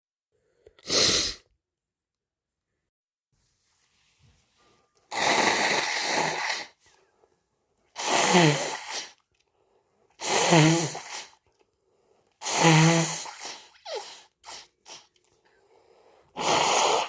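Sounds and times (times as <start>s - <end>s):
person sneezing: 0.8s - 1.5s
short breaths: 13.2s - 16.4s.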